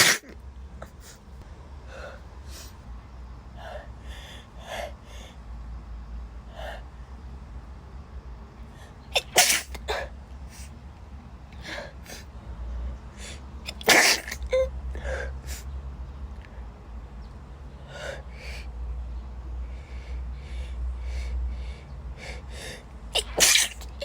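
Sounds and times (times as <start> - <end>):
woman sneezing: 0.0 - 0.3, 9.2 - 9.8, 13.7 - 14.7, 23.2 - 24.0.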